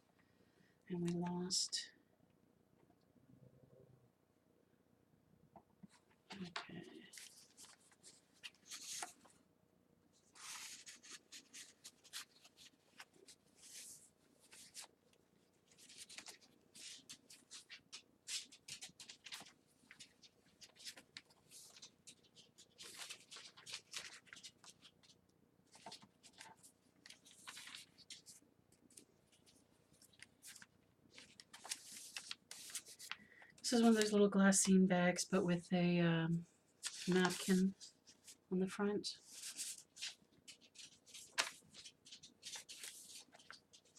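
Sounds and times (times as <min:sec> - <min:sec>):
paper pages rustling: 0:05.9 - 0:09.4, 0:10.2 - 0:34.2, 0:36.8 - 0:38.4, 0:39.2 - 0:43.9.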